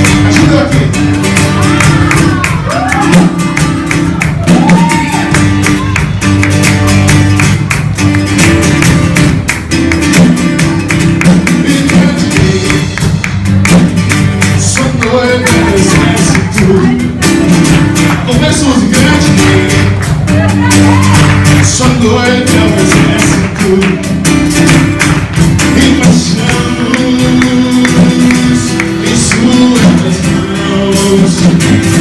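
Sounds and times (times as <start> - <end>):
band playing worship music: 0.0 - 32.0.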